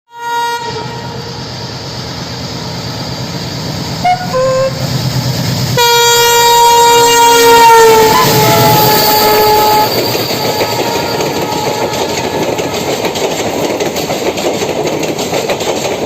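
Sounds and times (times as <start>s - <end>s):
locomotive horn blasts: 0.1s - 1.2s, 4.0s - 4.8s, 5.8s - 12.9s
diesel locomotive rumble: 0.6s - 16.0s.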